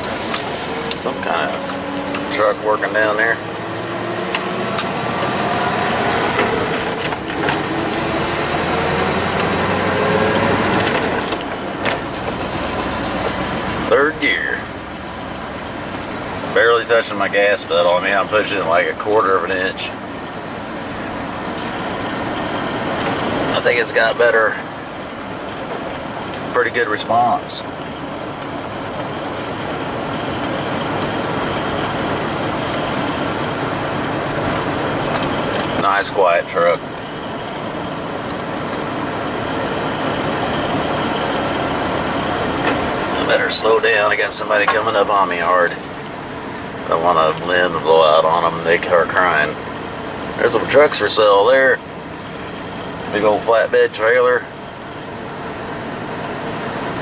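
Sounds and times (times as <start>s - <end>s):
road noise: 0.0s - 57.0s
truck engine running under load: 0.0s - 57.0s.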